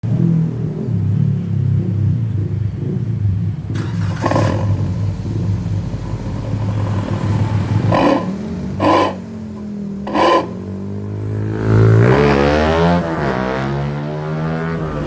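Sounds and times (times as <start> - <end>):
car engine deep rumble: 0.0 - 15.0
sharp hissy exhaust bursts: 3.8 - 10.6.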